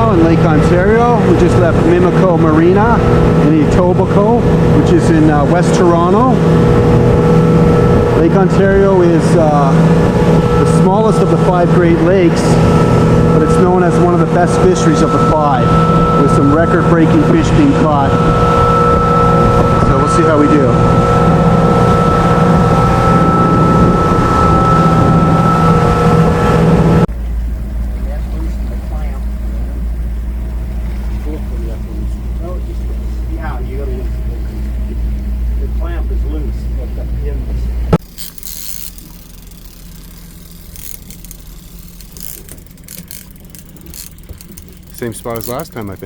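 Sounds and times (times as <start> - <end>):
wind on microphone: 0.0 - 27.1
boat engine running: 0.0 - 46.0
clicks and rattles of gear: 38.0 - 46.0.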